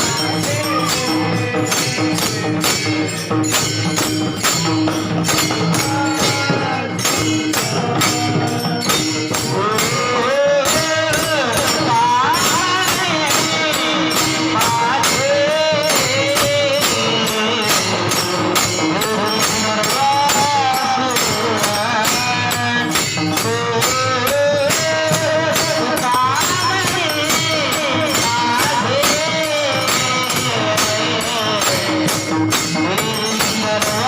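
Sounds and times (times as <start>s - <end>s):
person singing high: 0.0s - 2.7s
jingling percussion beat: 0.0s - 34.0s.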